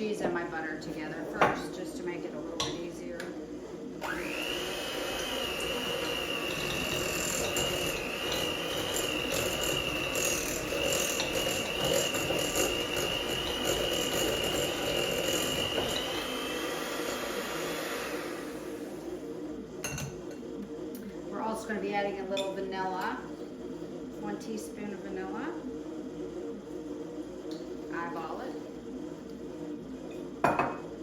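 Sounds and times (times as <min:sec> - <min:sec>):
electric mixer whining: 0:00.4 - 0:21.8.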